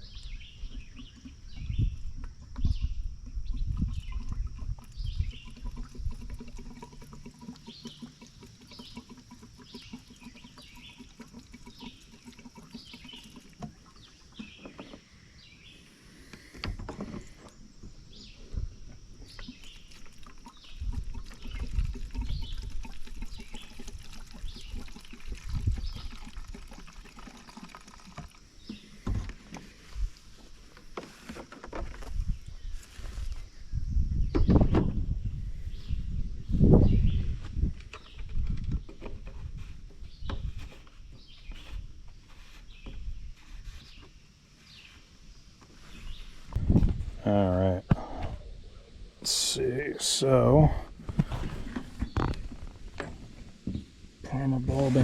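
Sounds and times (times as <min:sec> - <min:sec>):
birds chirping: 0:00.0 - 0:26.5, 0:40.0 - 0:55.0.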